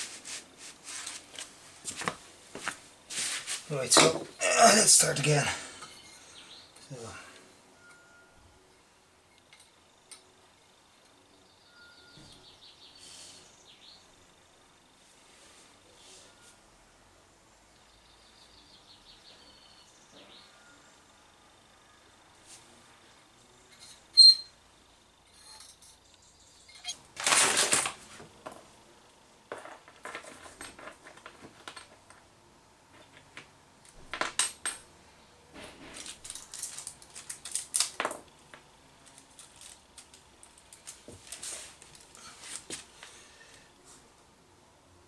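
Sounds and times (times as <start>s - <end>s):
metal clinks: 29.5s - 35.1s, 35.7s - 38.2s.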